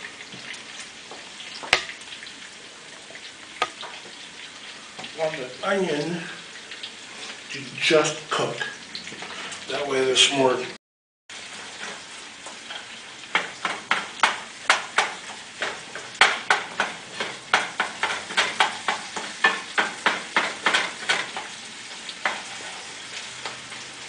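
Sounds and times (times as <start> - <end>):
food sizzling in a pan: 0.0 - 24.0
utensil scraping a pan: 8.6 - 9.7, 11.4 - 24.0.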